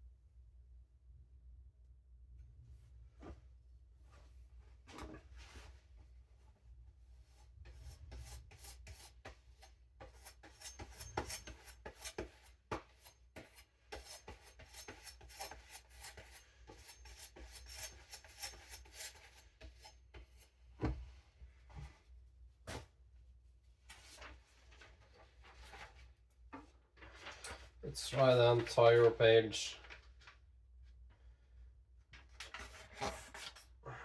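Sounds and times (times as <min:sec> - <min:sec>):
knife blade scraping: 0:10.1 - 0:12.3, 0:13.5 - 0:20.0.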